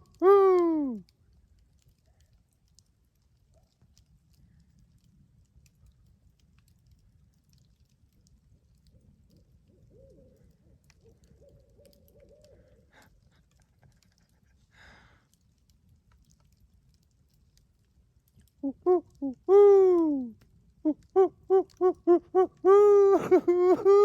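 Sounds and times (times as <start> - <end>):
owl hooting faintly: 9.6 - 14.4, 18.6 - 24.0.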